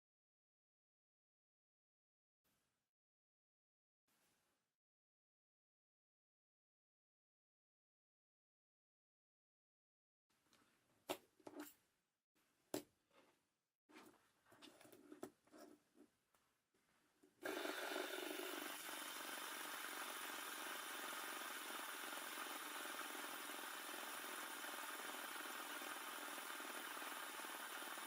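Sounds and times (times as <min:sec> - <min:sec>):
fidget spinner whirring: 0:17.4 - 0:28.0.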